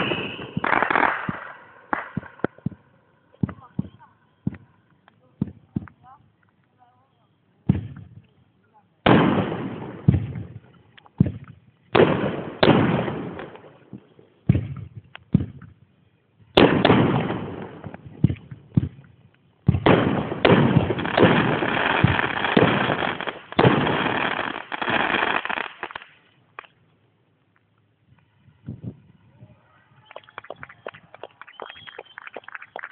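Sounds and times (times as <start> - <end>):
firework shells bursting with echo: 0.0 - 4.7, 16.4 - 26.8.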